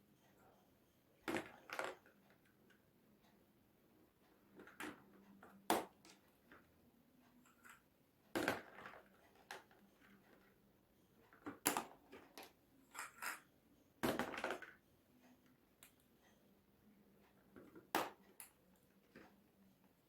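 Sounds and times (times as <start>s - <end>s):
balls rattling: 11.5s - 14.8s.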